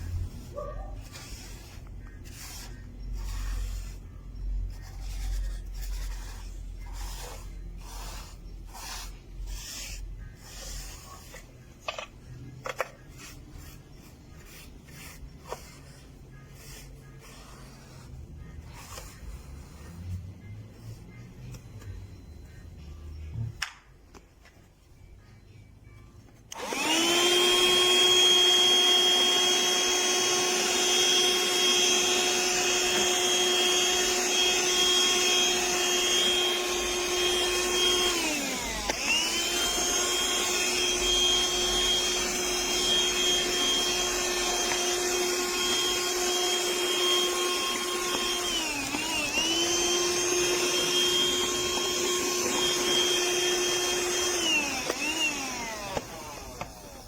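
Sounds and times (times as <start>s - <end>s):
handheld vacuum motor whine: 26.5s - 57.0s.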